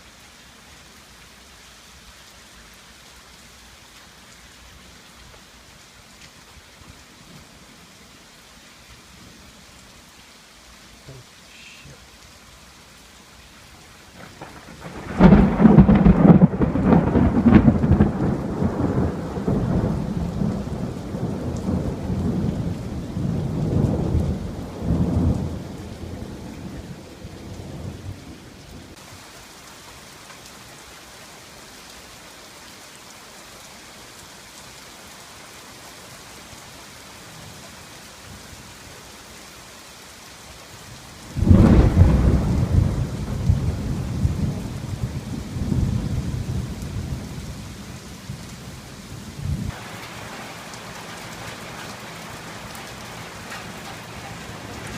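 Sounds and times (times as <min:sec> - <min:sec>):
steady rain: 0:00.0 - 0:54.9
loud rumbling thunderclap: 0:14.2 - 0:29.0, 0:41.3 - 0:47.6.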